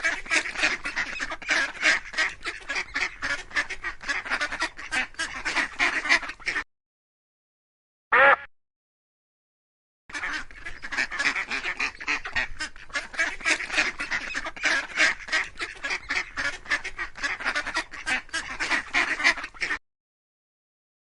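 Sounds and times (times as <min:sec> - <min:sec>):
ducks quacking: 0:00.0 - 0:06.6, 0:08.1 - 0:08.5, 0:10.1 - 0:19.8.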